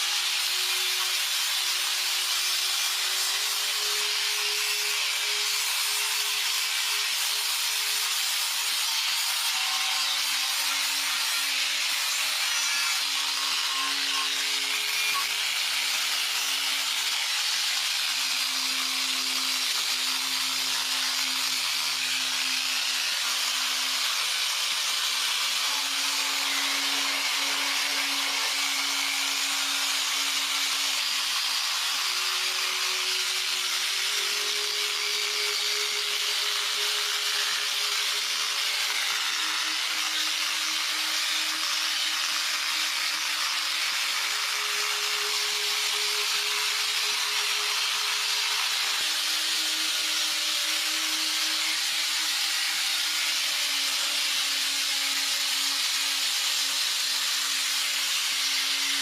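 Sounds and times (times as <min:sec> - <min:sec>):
power tool running: 0:00.0 - 0:59.0.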